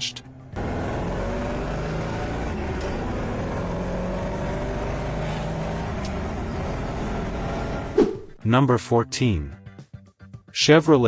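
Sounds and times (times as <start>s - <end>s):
car engine running: 0.0s - 8.0s.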